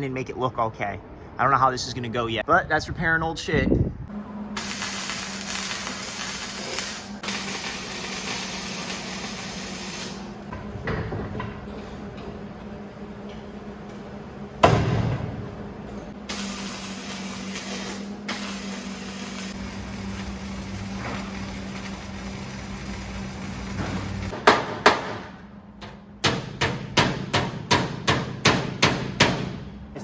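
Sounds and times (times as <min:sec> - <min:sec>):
welding arc crackling and hissing: 0:04.6 - 0:10.5, 0:16.2 - 0:24.4.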